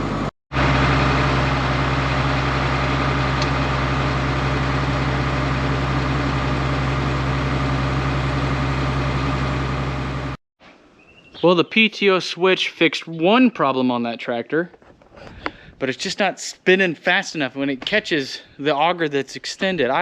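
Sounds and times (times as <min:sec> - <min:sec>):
tractor diesel engine running: 0:00.0 - 0:10.4.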